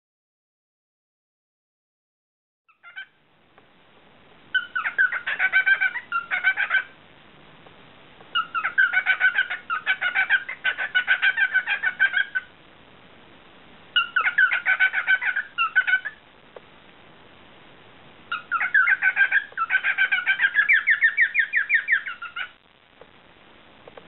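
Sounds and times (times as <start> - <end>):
cockatiel chirping and warbling: 2.7 - 3.2, 4.5 - 7.0, 8.3 - 12.5, 14.0 - 16.2, 18.3 - 22.6.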